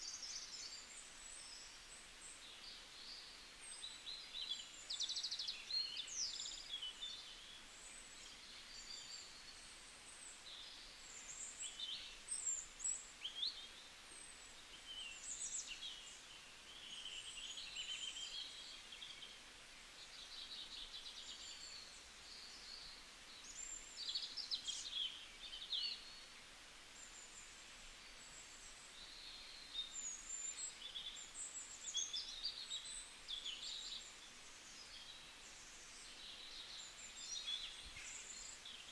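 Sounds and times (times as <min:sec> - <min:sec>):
faint steady background hiss: 0:00.0 - 0:38.9
songbirds singing and chirping: 0:00.0 - 0:38.9.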